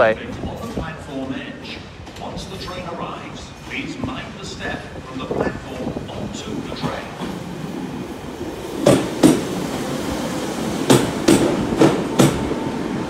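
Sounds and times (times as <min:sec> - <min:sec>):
train wheels clunking over rail joints: 0:08.6 - 0:10.0, 0:10.6 - 0:13.0.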